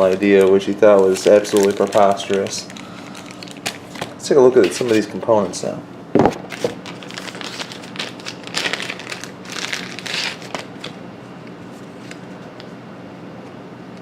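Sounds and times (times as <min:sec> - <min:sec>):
packaging crinkling and rustling: 0:00.0 - 0:11.0
faint steady hum: 0:00.0 - 0:14.0.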